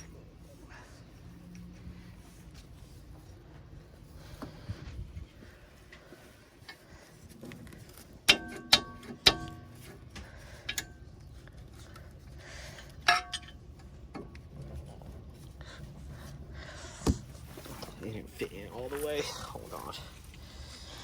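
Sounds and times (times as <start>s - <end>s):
quiet handling noises: 0.0s - 21.0s
metal tools clanking: 8.2s - 11.1s, 12.7s - 14.8s.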